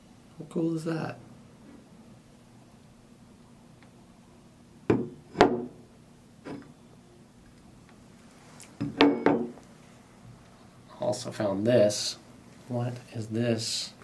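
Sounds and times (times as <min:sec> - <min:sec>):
objects knocking on hard surface: 0:08.8 - 0:09.6.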